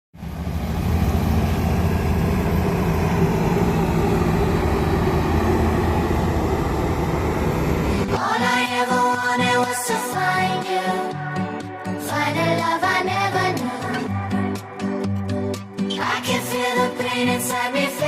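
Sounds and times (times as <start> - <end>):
combine harvester droning: 0.2 - 8.2
music: 8.1 - 18.0.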